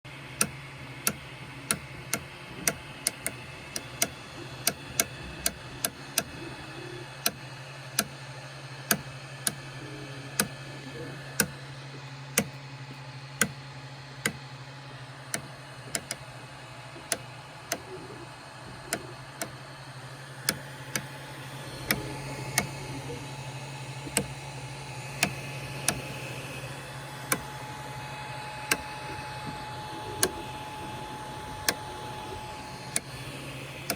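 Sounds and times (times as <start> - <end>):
printer motors and fans humming: 0.1 - 33.9
extruder clicking: 0.3 - 8.2, 8.9 - 13.6, 14.2 - 14.5, 15.2 - 33.9.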